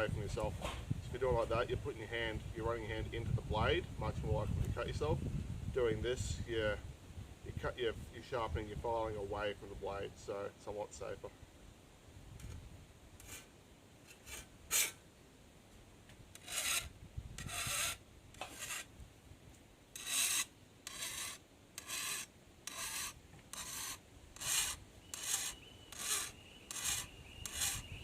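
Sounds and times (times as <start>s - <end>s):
hand file rasping on steel: 14.1s - 15.0s, 16.4s - 18.9s, 20.0s - 27.9s.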